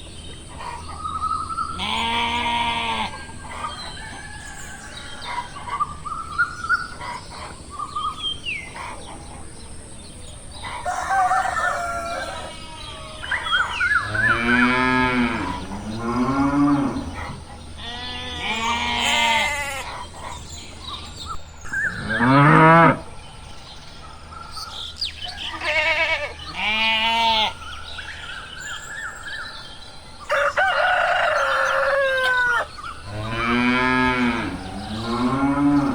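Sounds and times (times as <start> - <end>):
cows mooing: 13.9 - 19.9, 21.9 - 23.1, 31.3 - 35.9.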